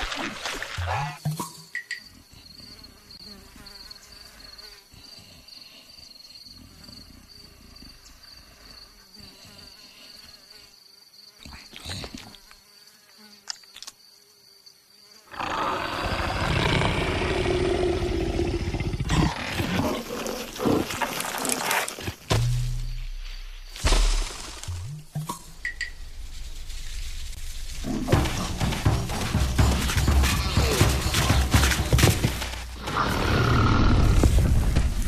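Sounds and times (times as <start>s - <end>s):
rough animal vocalisation: 15.3s - 22.2s.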